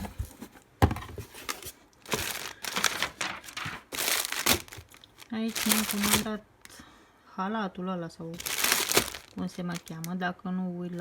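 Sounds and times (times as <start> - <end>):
packaging crinkling and rustling: 1.1 - 6.4, 8.4 - 10.2.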